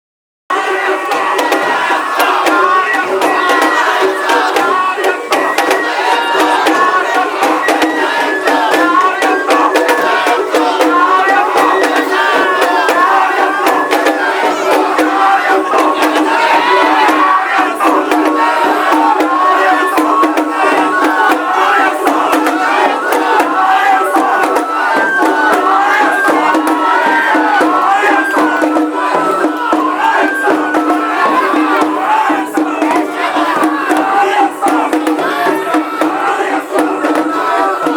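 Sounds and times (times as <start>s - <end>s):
crowd shouting and chanting: 0.5s - 37.9s
drum strikes: 0.5s - 37.9s
festival music: 0.5s - 37.9s.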